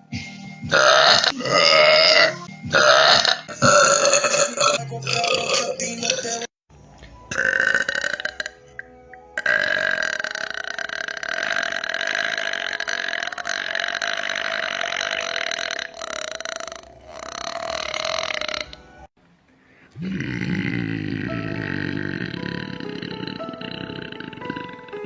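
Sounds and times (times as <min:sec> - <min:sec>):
woman burping: 0:00.7 - 0:06.5, 0:07.3 - 0:08.6, 0:09.4 - 0:18.9, 0:20.0 - 0:25.0.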